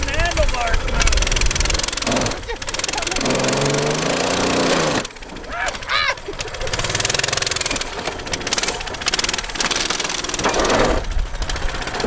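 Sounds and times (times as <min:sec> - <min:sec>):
small engine running: 0:00.0 - 0:12.0.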